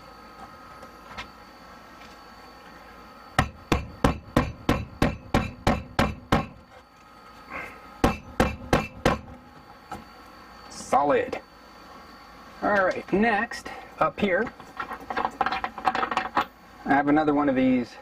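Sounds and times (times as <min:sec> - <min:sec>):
hammer blows: 0:03.4 - 0:06.6, 0:08.0 - 0:09.4.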